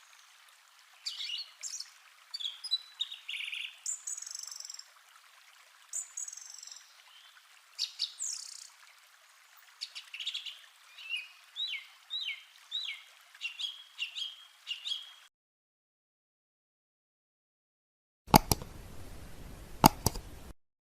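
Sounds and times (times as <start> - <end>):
songbirds singing: 1.0 - 4.9, 5.9 - 8.8, 9.5 - 15.3
faint background hiss: 18.3 - 20.5.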